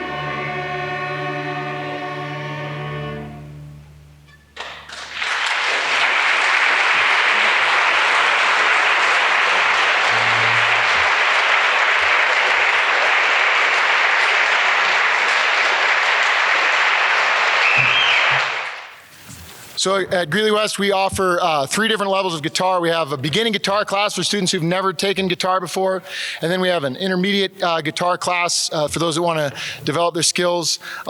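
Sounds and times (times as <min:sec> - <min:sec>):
string orchestra chord: 0:00.0 - 0:04.5
audience applause: 0:04.6 - 0:19.0.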